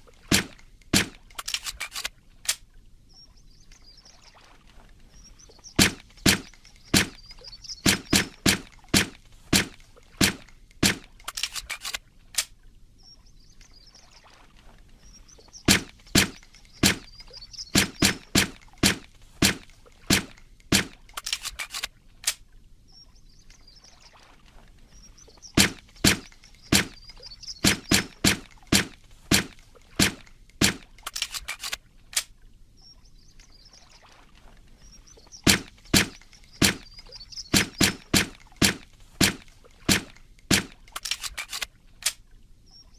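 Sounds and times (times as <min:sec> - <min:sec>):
rattle of clicks: 0:00.5 - 0:02.6, 0:06.0 - 0:12.5, 0:19.6 - 0:22.4, 0:25.8 - 0:32.3, 0:35.6 - 0:42.2
suppressed pistol shots: 0:37.5 - 0:41.7.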